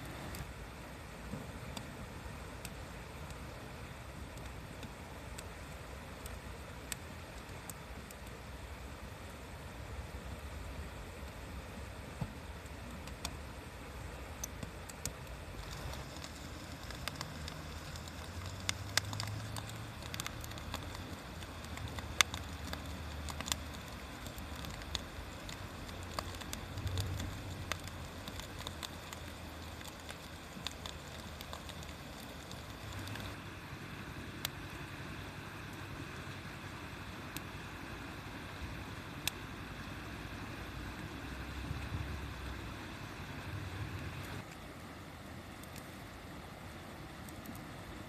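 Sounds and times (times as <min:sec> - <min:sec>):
wood fire crackling: 0:00.0 - 0:48.0
sharp pops from fire: 0:14.4 - 0:33.4.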